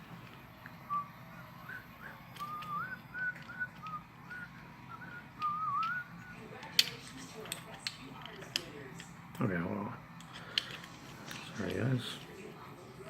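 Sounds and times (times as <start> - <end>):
man whistling a tune: 0.9 - 6.1.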